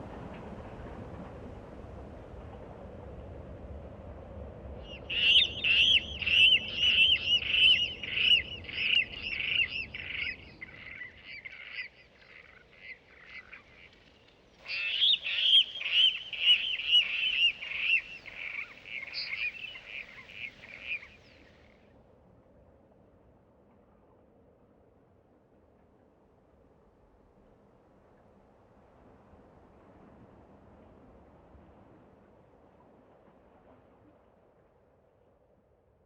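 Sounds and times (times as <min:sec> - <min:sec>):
bird squealing call: 0:05.1 - 0:11.0, 0:14.7 - 0:21.1.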